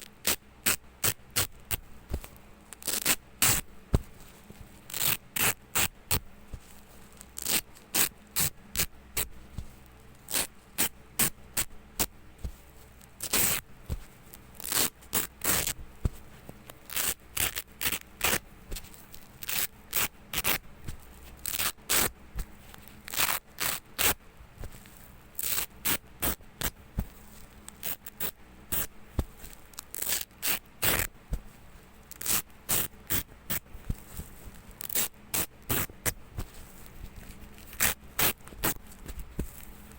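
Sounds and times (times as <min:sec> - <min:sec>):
velcro ripping apart: 0:02.8 - 0:03.6, 0:04.9 - 0:05.9, 0:07.3 - 0:09.3, 0:10.3 - 0:11.7, 0:13.2 - 0:13.6, 0:14.6 - 0:15.8, 0:16.9 - 0:18.4, 0:19.2 - 0:20.6, 0:21.4 - 0:22.1, 0:23.1 - 0:24.2, 0:25.4 - 0:26.7, 0:27.7 - 0:31.1, 0:32.1 - 0:33.6, 0:34.8 - 0:36.2, 0:37.2 - 0:39.7.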